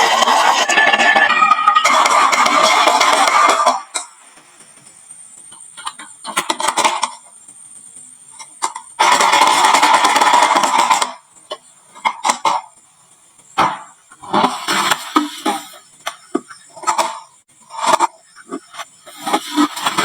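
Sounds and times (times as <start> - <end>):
dense rattling of marbles: 0.0 - 4.2, 9.0 - 11.2
marbles clacking on wooden run: 0.0 - 4.2.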